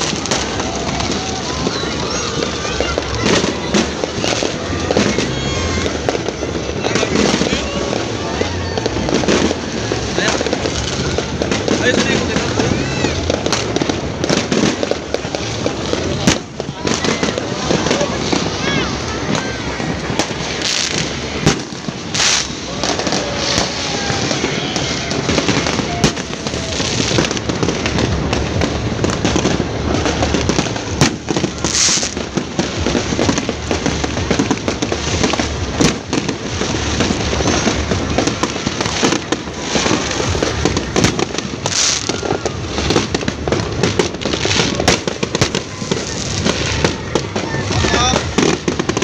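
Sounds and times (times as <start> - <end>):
fireworks crackling and banging: 0.0 - 49.0
loud firework reports: 0.0 - 49.0.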